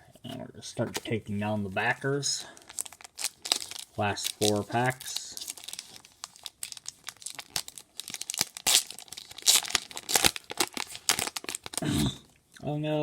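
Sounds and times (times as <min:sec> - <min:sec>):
wrapper crinkling: 0:01.0 - 0:11.8
booster pack torn open: 0:02.6 - 0:11.8.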